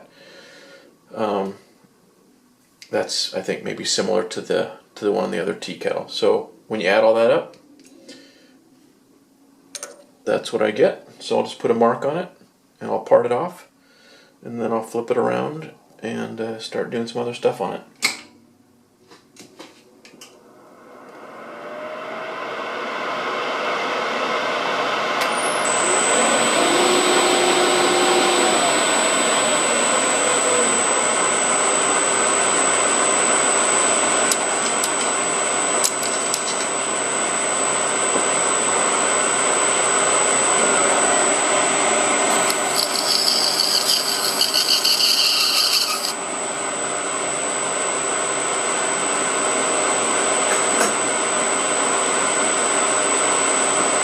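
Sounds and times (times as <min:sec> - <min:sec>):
metal lathe cutting with whine: 0:21.3 - 0:46.7
fluttering high-pitched screech: 0:42.3 - 0:46.2.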